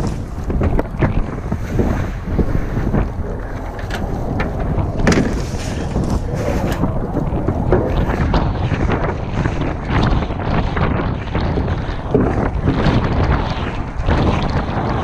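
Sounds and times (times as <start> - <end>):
rustles and knocks: 0.0 - 9.1
wind buffeting microphone: 0.0 - 15.0.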